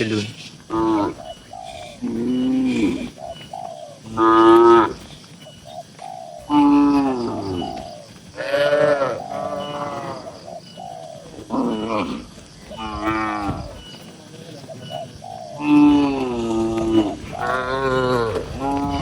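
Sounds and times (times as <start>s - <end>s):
cattle mooing: 8.4s - 10.4s, 11.3s - 13.8s, 15.6s - 19.0s.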